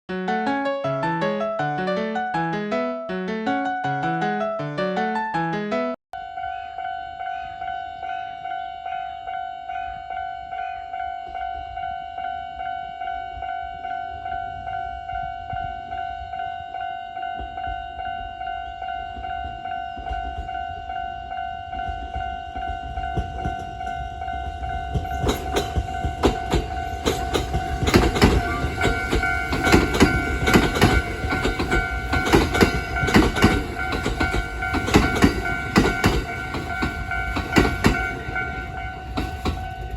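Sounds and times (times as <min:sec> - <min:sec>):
level-crossing bell ringing: 0:06.2 - 0:39.9
train rumbling past: 0:13.0 - 0:39.9
train wheels clattering on rail joints: 0:19.2 - 0:39.9.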